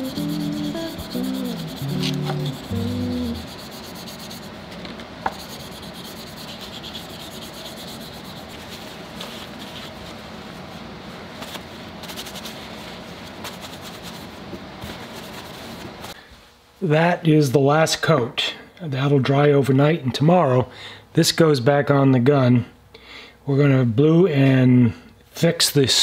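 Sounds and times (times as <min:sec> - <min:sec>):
music: 0:00.0 - 0:03.5
hand rubbing on wood: 0:00.0 - 0:04.6, 0:05.3 - 0:10.1.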